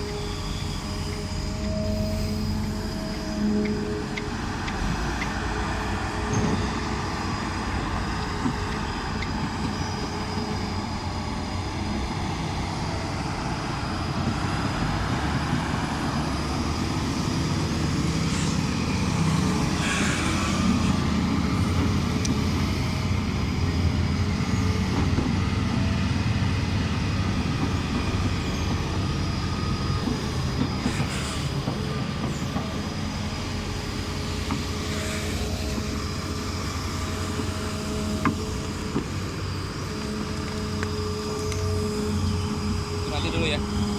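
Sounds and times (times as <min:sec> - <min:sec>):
heavy diesel machinery droning: 0:00.0 - 0:43.9.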